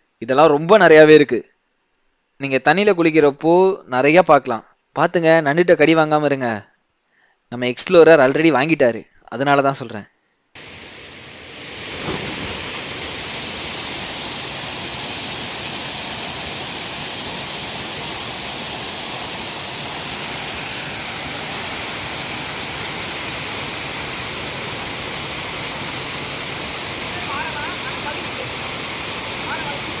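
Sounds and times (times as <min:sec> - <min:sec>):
waterfall roaring: 0:10.6 - 0:30.0.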